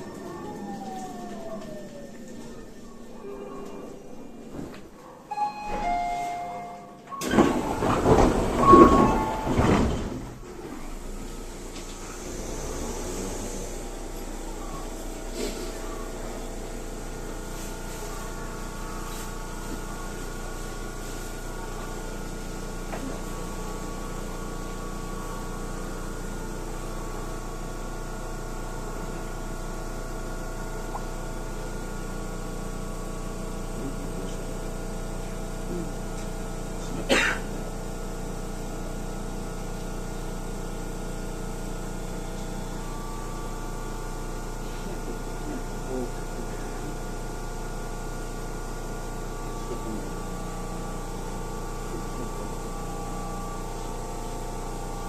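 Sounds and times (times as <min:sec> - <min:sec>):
train equipment hum: 0:00.0 - 0:12.2.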